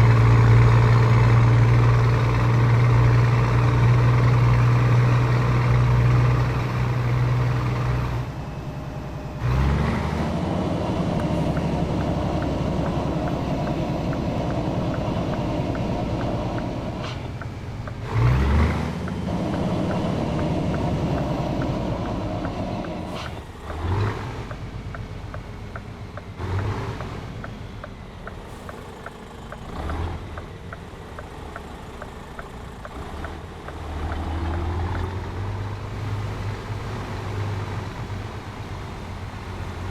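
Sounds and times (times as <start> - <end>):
truck diesel engine: 0.0 - 39.9.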